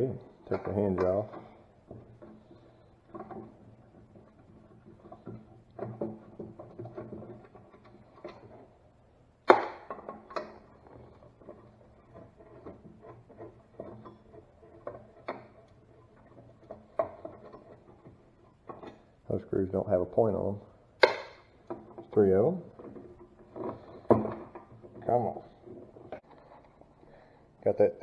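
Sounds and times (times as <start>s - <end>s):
hand tools clicking and scraping: 0.0s - 27.8s.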